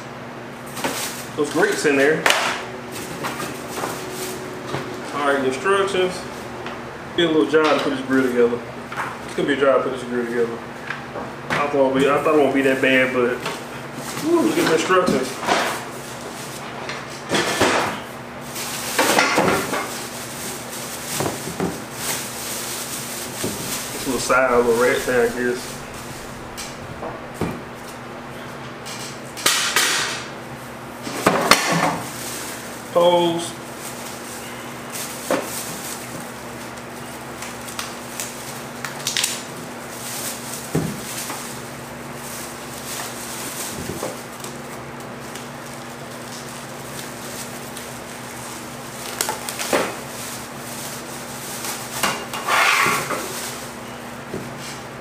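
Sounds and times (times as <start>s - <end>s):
faint hum: 0.0s - 9.1s, 22.4s - 30.9s.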